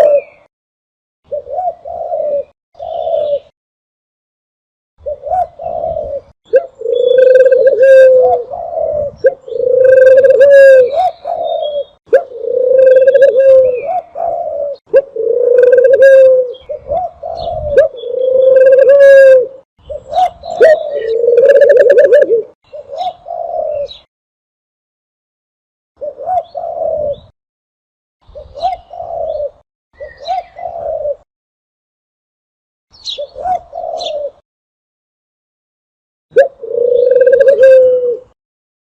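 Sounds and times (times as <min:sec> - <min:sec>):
dove cooing: 0:00.0 - 0:00.5, 0:01.3 - 0:03.5, 0:05.0 - 0:24.1, 0:26.0 - 0:27.3, 0:28.3 - 0:31.3, 0:33.1 - 0:34.4, 0:36.3 - 0:38.4.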